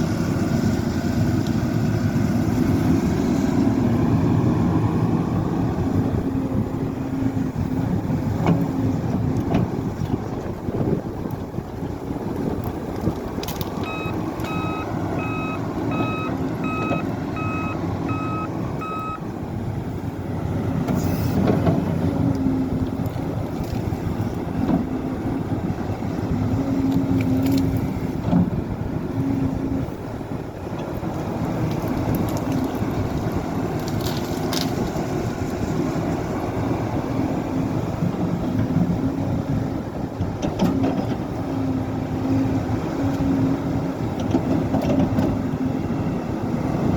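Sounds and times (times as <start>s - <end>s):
diesel engine running: 0.0s - 46.9s
backup alarm beeping: 13.8s - 19.3s.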